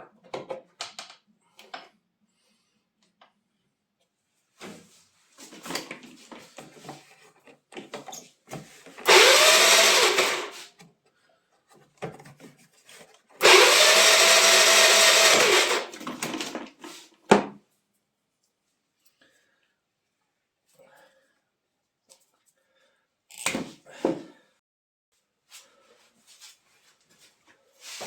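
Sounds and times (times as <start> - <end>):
power tool spinning: 9.0 - 10.7, 13.4 - 16.3.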